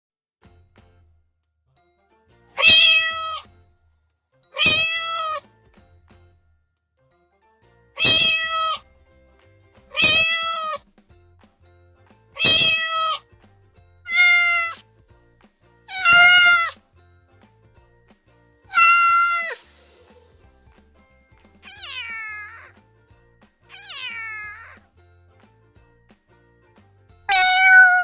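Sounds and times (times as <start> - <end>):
cat meowing: 2.6 - 3.5, 4.6 - 5.4, 8.0 - 8.8, 9.9 - 10.8, 12.4 - 13.2, 14.1 - 14.8, 15.9 - 16.8, 18.7 - 19.6, 21.6 - 22.8, 23.7 - 24.8, 27.3 - 28.0.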